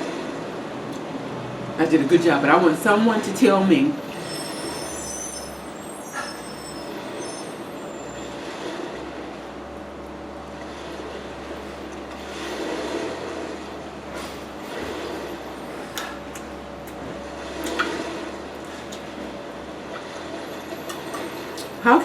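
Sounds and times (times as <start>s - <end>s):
chewing and mouth noises: 15.8s - 19.1s.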